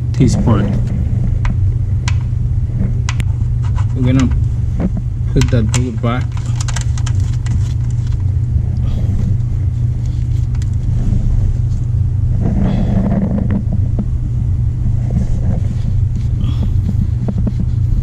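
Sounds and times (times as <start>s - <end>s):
low mechanical rumble: 0.0s - 18.0s
rustling scrape: 2.7s - 5.0s, 6.3s - 14.1s, 14.8s - 18.0s.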